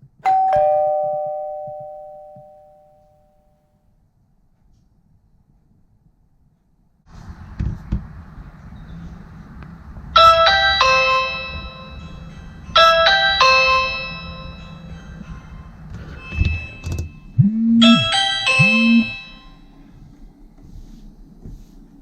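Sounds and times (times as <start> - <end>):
low steady hum: 0.1 - 22.0
doorbell chime: 0.2 - 3.6, 10.2 - 19.7.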